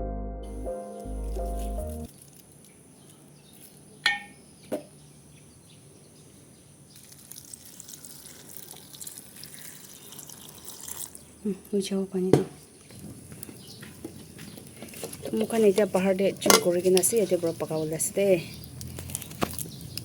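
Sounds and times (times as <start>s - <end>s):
utensil clinking against pot: 4.0s - 4.4s, 16.4s - 17.3s
liquid simmering: 7.0s - 11.4s.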